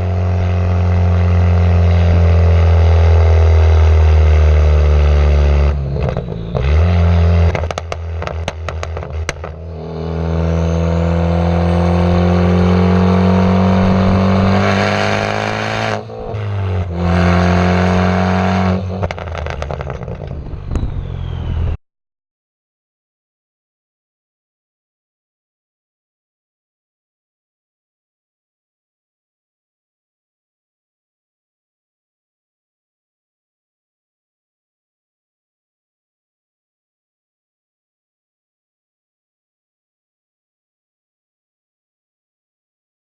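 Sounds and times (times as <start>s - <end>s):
car exhaust revving: 0.0s - 21.8s
exhaust pops and crackles: 7.4s - 9.6s, 19.0s - 21.0s.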